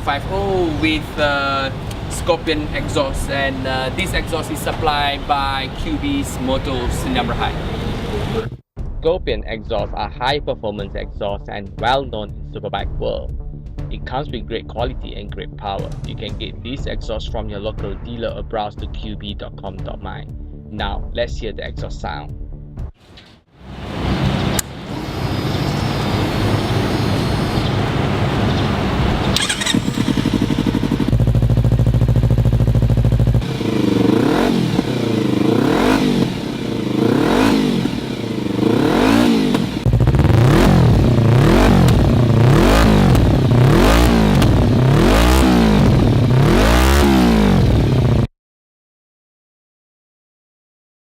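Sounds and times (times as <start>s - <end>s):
motorcycle engine revving: 24.4s - 48.3s.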